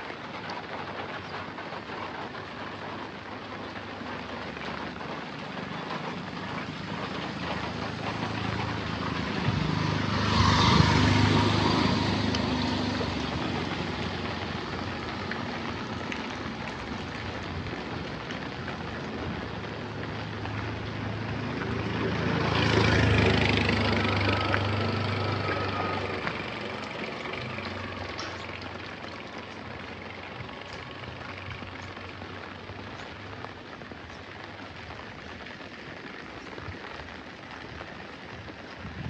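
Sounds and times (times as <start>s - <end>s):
heavy rain: 0.0s - 39.0s
vehicle passing: 5.4s - 17.2s, 20.0s - 32.6s.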